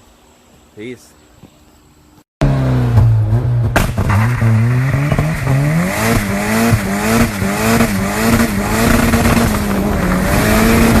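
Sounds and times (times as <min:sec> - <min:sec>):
vehicle engine revving: 0:02.4 - 0:11.0.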